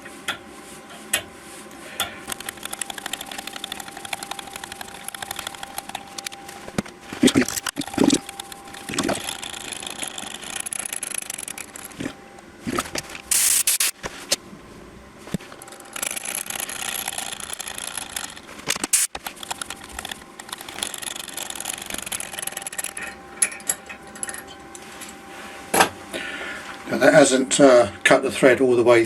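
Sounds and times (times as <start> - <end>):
faint steady hum: 0.0 - 29.0
sharp clicks: 2.3 - 6.4, 16.0 - 22.8.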